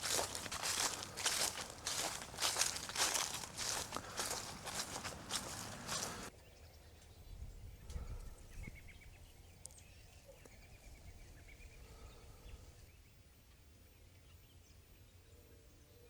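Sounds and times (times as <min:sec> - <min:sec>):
footsteps crunching dry leaves: 0:00.0 - 0:06.3.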